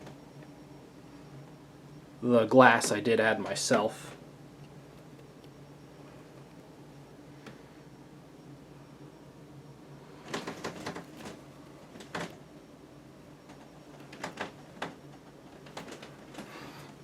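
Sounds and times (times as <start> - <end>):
ceiling fan motor hum: 0.0 - 17.0
sharp clicks and knocks: 10.3 - 12.4, 13.5 - 16.5.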